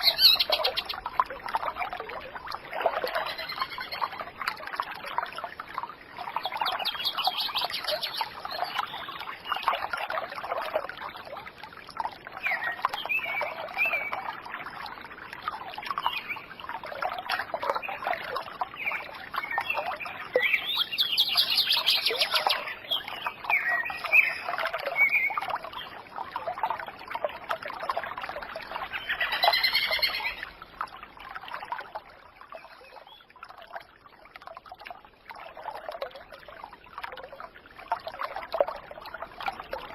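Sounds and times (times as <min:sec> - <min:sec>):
birds chirping: 0:00.0 - 0:01.0, 0:06.4 - 0:09.6, 0:19.6 - 0:25.4
water trickling and splashing: 0:00.0 - 0:39.9.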